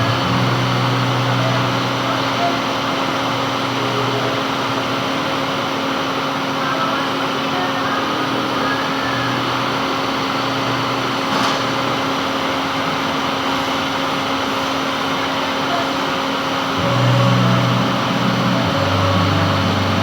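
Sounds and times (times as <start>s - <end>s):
metal lathe humming: 16.2s - 20.0s.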